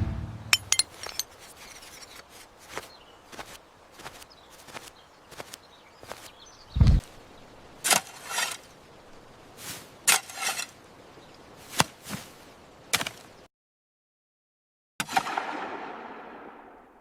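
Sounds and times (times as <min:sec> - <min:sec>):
heavy low thud: 0:00.0 - 0:00.7.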